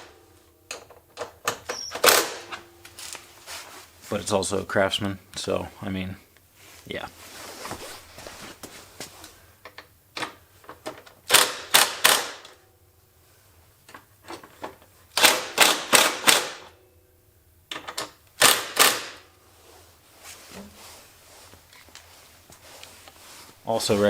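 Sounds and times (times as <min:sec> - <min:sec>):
impact wrench rattling bursts: 0:00.7 - 0:02.6, 0:11.2 - 0:12.6, 0:15.1 - 0:16.8, 0:17.7 - 0:19.3.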